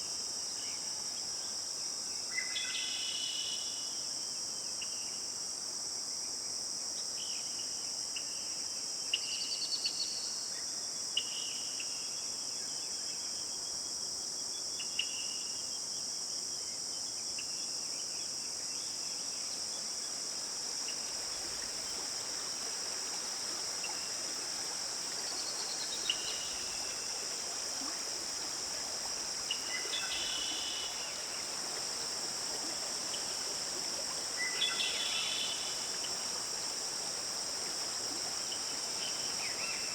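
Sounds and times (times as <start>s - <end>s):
insects chirping: 12.4s - 39.9s.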